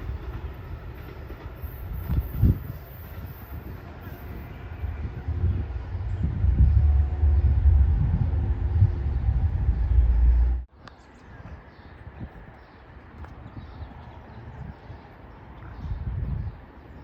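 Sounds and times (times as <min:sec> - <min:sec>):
train rumbling: 0:00.0 - 0:10.7.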